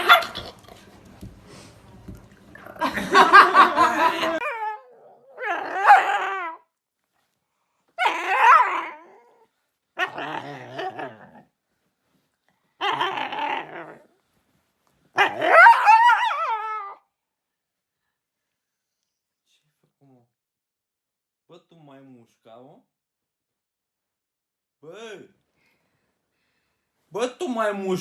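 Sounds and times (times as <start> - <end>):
dog barking and growling: 0.0 - 1.0, 2.5 - 6.7, 8.0 - 11.6, 12.8 - 14.2, 15.1 - 17.0.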